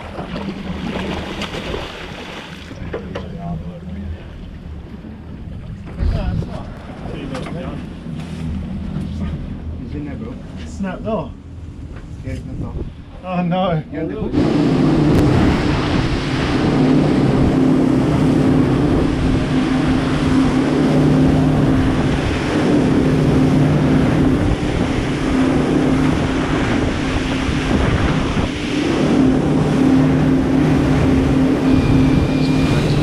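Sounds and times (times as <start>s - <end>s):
boat engine humming: 0.0s - 33.0s
water noise: 0.0s - 33.0s
wind on microphone: 11.7s - 13.2s, 14.2s - 33.0s.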